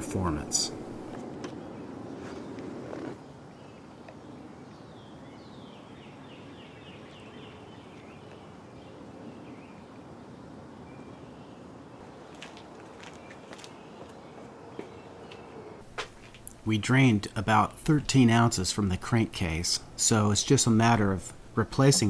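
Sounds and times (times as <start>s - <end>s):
faint background hiss: 0.0s - 22.0s
bird singing falling chirps: 3.2s - 15.8s.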